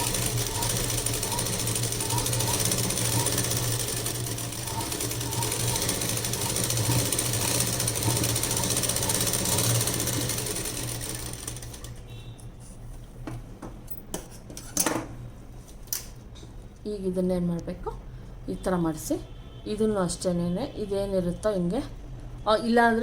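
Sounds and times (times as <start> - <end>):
sewing machine stitching: 0.0 - 12.0.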